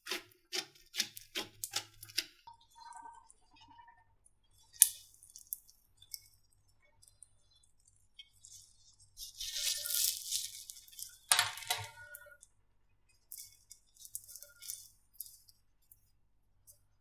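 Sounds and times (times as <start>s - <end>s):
slime squishing with crackling clicks: 0.0s - 2.5s.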